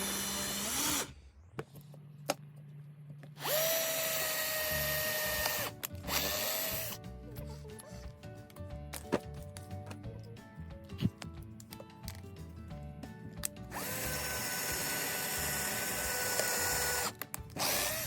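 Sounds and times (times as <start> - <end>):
power drill boring into chipboard: 0.0 - 1.2, 3.4 - 7.0, 13.7 - 18.0
background music: 3.6 - 18.0.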